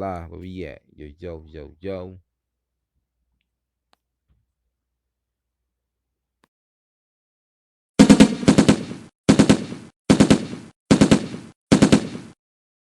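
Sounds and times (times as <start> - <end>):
rapid gunfire bursts: 8.0 - 12.4.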